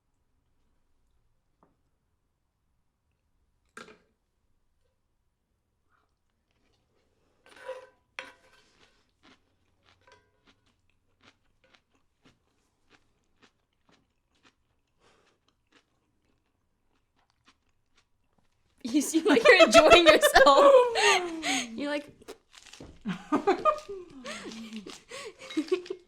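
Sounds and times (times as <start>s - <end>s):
chewing food: 6.0s - 7.6s, 8.3s - 19.8s, 22.2s - 26.0s.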